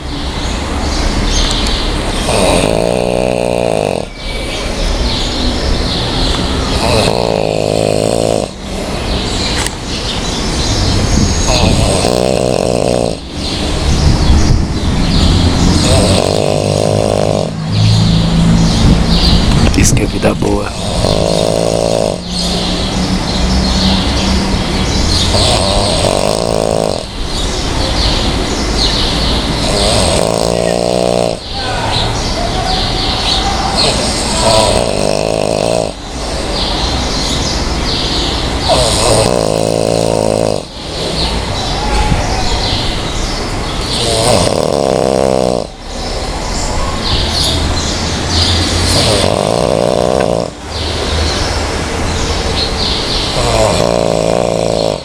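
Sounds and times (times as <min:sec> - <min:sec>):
loud rasping snoring: 0:00.0 - 0:41.8, 0:42.4 - 0:55.0
birds chirping: 0:00.0 - 0:55.0
breathy hissing: 0:02.1 - 0:04.2, 0:06.7 - 0:09.2, 0:11.4 - 0:13.8, 0:15.6 - 0:17.7, 0:20.4 - 0:23.0, 0:25.2 - 0:27.5, 0:29.6 - 0:31.7, 0:33.8 - 0:37.0, 0:38.7 - 0:41.5, 0:48.4 - 0:50.8, 0:53.3 - 0:55.0.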